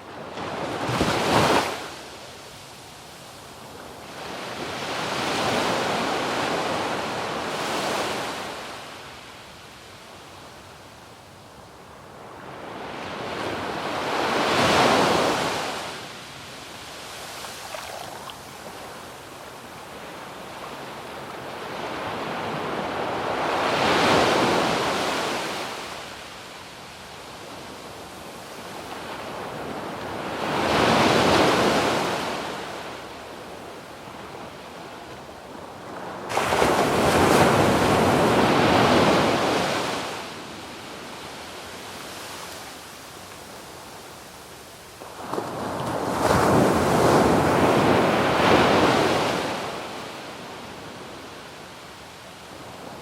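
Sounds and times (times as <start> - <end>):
waves breaking on beach: 12.7 - 26.2, 36.0 - 53.0.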